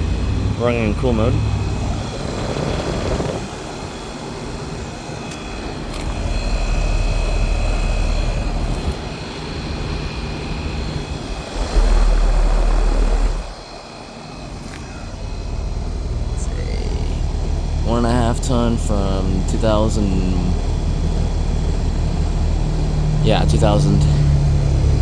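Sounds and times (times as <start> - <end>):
faint high whine: 0.0 - 25.0
heat pump fan and compressor: 0.0 - 25.0
low rumble: 10.6 - 19.7.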